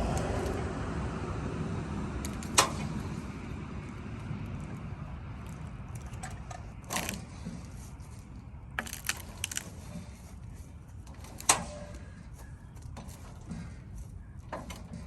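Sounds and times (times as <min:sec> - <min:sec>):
low steady rumble: 0:00.0 - 0:15.0
metal clanks and knocks: 0:05.4 - 0:10.3, 0:11.0 - 0:15.0.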